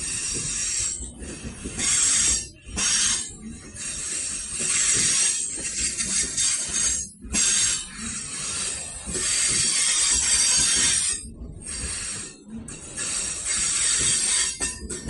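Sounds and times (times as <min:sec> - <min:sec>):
low train rumble: 0:00.0 - 0:15.0
train wheels squealing on rails: 0:00.0 - 0:15.0.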